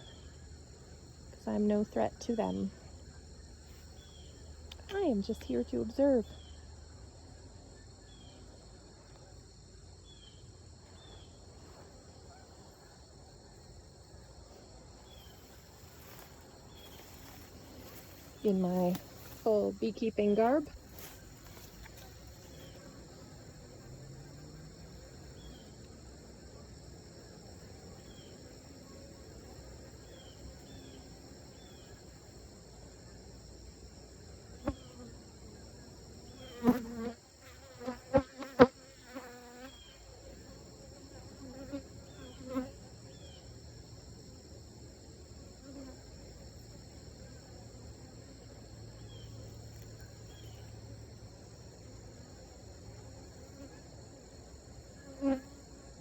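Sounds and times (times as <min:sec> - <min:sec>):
honeybees buzzing: 0:00.0 - 0:56.0
high-pitched insect drone: 0:15.1 - 0:25.8.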